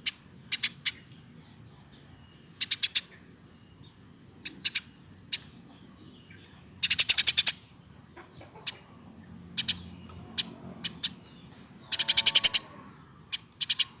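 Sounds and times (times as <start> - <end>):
sparrow rattling call: 0.0 - 1.0, 2.6 - 3.1, 4.4 - 5.5, 6.8 - 7.6, 9.6 - 12.7, 13.3 - 14.0
sparrow chirping: 0.0 - 14.0.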